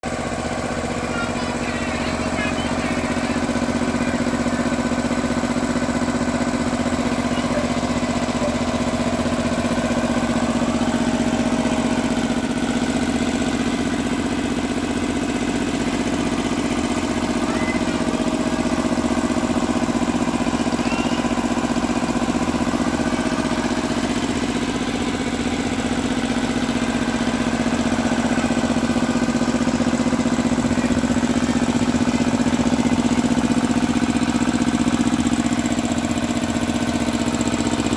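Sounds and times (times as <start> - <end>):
air compressor running: 0.0 - 37.9.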